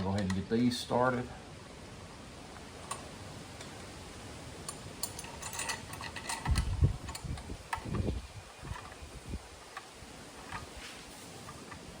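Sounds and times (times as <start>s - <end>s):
light metallic clicks of bolts: 4.6s - 12.0s.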